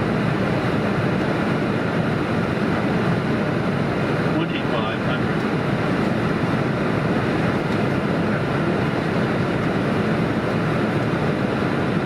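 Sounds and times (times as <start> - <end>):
jet airliner engines: 0.0 - 12.0.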